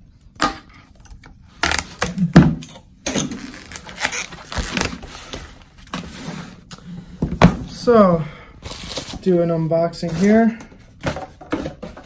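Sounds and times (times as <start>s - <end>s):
packaging rustling: 3.2s - 6.0s.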